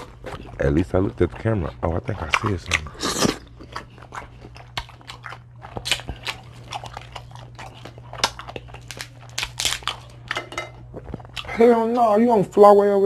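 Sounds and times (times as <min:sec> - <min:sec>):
person chewing crab: 0:00.0 - 0:11.6
crab shell cracking: 0:04.6 - 0:10.5.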